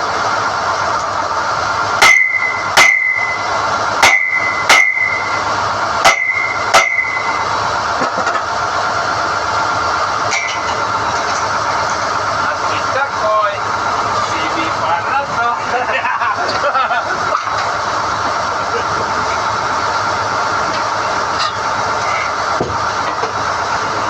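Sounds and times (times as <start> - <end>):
drilling rig running: 0.0 - 24.0
ringing metal clanks: 2.0 - 3.4, 4.0 - 5.3, 6.0 - 7.4, 10.3 - 11.4.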